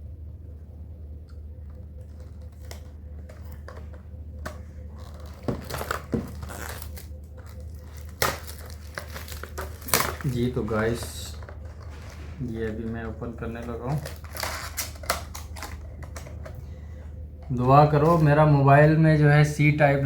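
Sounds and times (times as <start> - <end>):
steady low hum: 0.0 - 20.0
packaging crinkling and tearing: 1.7 - 16.8.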